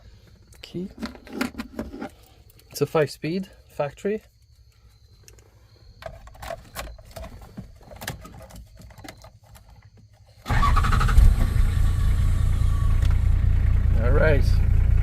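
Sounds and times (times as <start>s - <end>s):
diesel engine starting and running: 10.4s - 15.0s.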